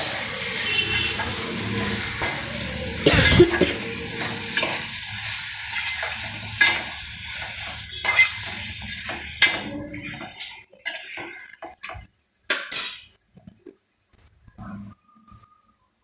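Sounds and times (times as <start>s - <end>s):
hiss: 0.0s - 9.6s
metal utensil clinking on pot: 8.0s - 13.2s.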